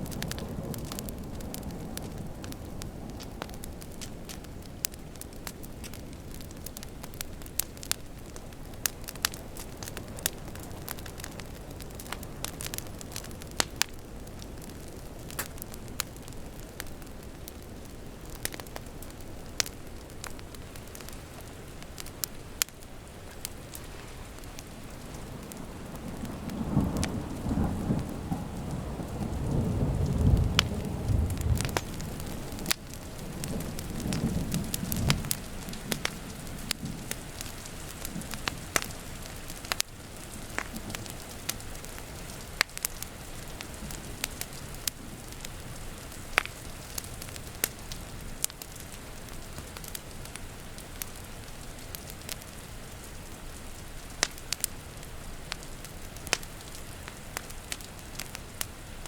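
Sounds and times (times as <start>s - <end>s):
rain hiss: 0.0s - 59.0s
wood fire crackling: 0.0s - 59.0s
thunder rumbling: 24.3s - 38.7s.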